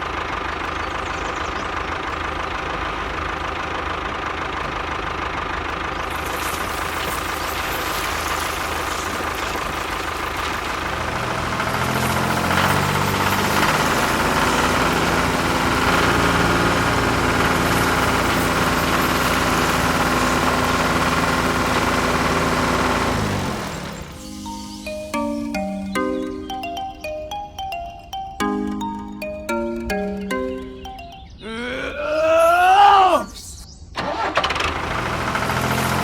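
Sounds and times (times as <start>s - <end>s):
small engine running: 0.0s - 31.1s, 34.0s - 36.0s.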